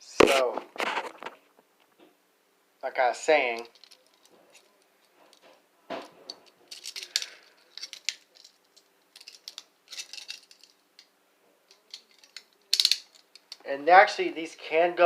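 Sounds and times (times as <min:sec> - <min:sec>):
metal handcuffs clicking and clinking: 0:03.5 - 0:05.5, 0:06.2 - 0:11.1, 0:11.7 - 0:13.7.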